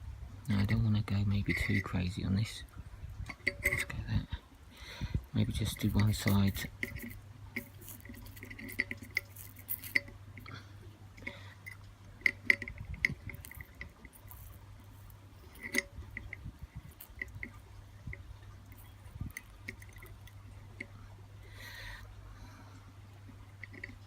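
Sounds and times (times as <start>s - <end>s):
steady low hum: 0.0s - 24.0s
flux crackling and spitting: 5.2s - 21.0s.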